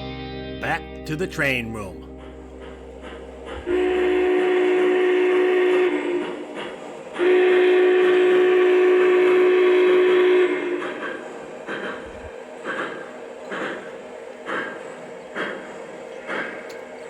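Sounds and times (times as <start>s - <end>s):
model train horn blasts: 3.6s - 6.4s, 7.2s - 10.8s.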